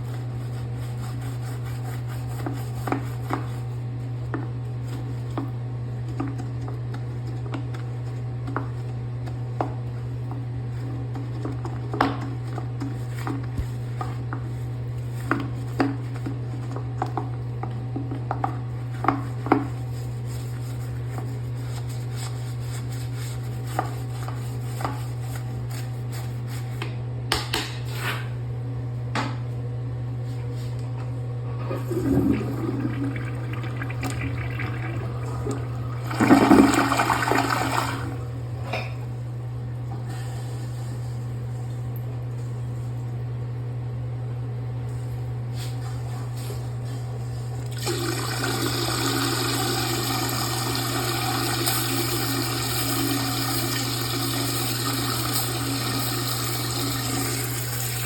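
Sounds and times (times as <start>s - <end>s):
toilet brush scraping and knocking: 0.0s - 26.8s, 31.8s - 38.2s
water rushing in toilet bowl: 31.6s - 38.6s, 47.6s - 58.0s.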